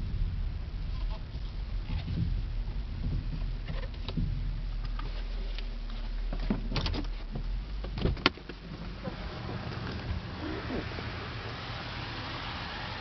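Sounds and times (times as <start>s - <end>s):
road and engine rumble in car: 0.0s - 13.0s
sharp clicks and knocks: 6.3s - 8.9s.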